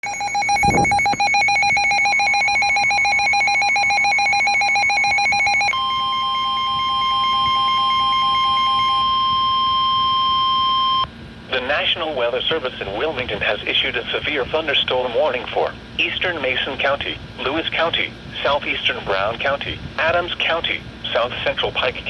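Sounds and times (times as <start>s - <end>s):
pulsed beeps: 0.0s - 11.1s
steady alarm tone: 0.0s - 11.1s
warbling electronic alarm: 0.0s - 11.1s.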